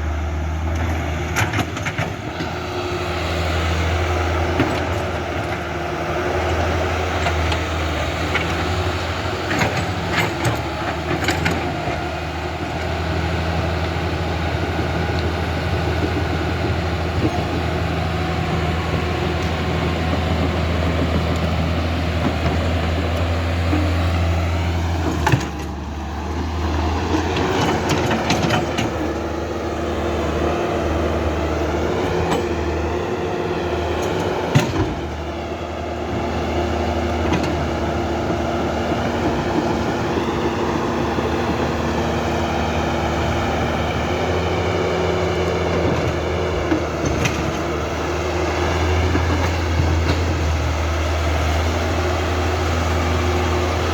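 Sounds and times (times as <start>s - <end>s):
clicks and clatter: 9.5s - 12.0s, 27.0s - 29.2s.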